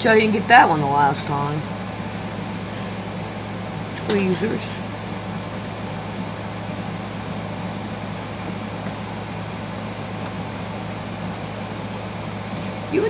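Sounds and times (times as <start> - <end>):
steady fan hum and hiss: 0.0 - 13.0.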